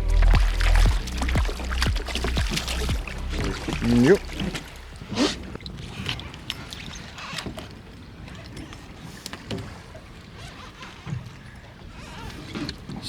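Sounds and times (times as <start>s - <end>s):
steady low rumble: 0.0s - 5.9s.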